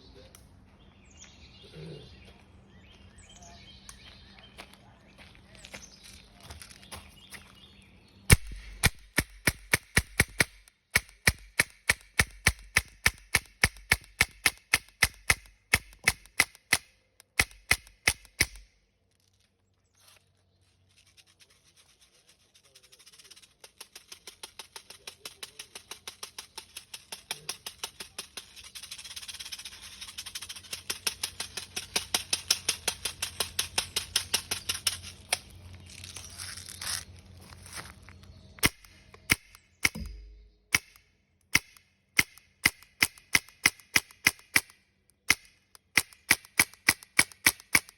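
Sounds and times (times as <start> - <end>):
air gun firing pops: 8.3 - 18.7, 38.6 - 47.9.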